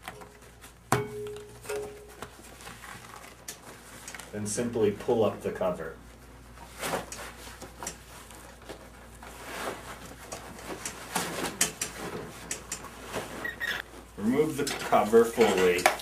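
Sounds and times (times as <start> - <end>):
fabric cover rustling and scraping: 1.6 - 4.4, 6.0 - 15.8.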